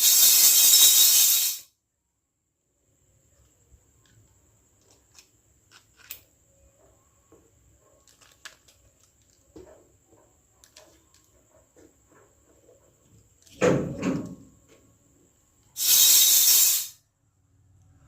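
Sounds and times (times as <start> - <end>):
small toy pieces clicking: 0.0 - 1.6, 8.0 - 9.4.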